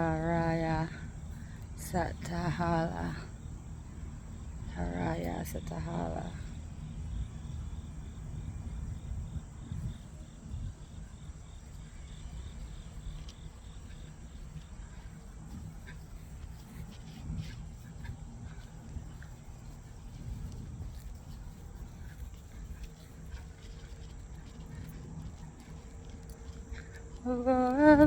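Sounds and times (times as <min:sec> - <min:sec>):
cricket chirping: 0:00.0 - 0:28.0
steady low rumble: 0:00.0 - 0:28.0.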